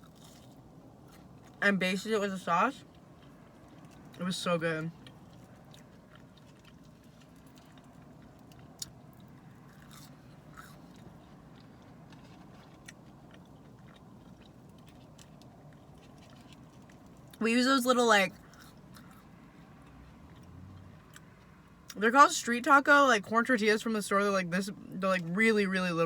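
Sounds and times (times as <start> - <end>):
chewing food: 0.0 - 1.6, 2.8 - 17.4, 18.3 - 22.0
low steady hum: 0.0 - 26.0.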